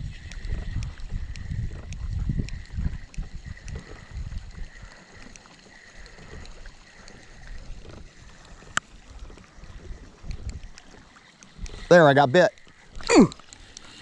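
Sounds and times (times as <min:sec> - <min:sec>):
faint ticks: 0:00.0 - 0:14.0
water sloshing against a boat: 0:00.0 - 0:14.0.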